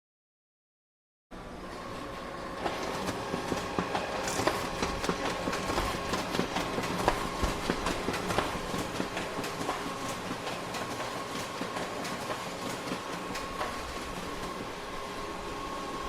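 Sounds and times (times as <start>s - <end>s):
photocopier humming: 1.4s - 16.0s
photocopier clicking and clacking: 2.6s - 14.4s.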